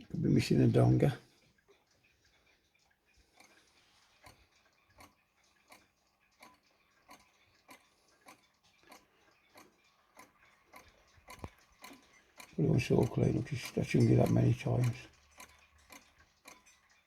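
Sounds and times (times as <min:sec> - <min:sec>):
wall clock ticking: 0:00.0 - 0:17.0.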